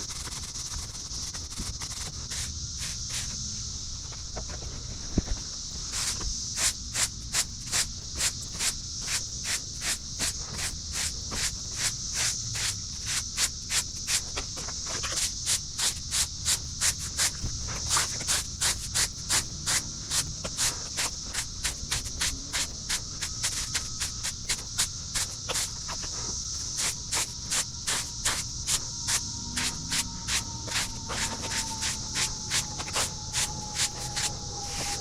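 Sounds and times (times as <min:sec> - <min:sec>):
high-pitched insect drone: 0:00.0 - 0:35.0
quick rubbing strokes: 0:15.1 - 0:35.0.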